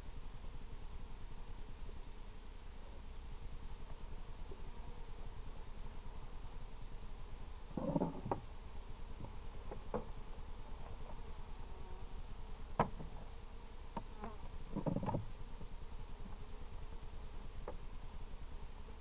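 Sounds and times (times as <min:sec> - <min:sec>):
sharp clicks and knocks: 0:09.2 - 0:10.2, 0:12.8 - 0:13.2, 0:14.0 - 0:15.3.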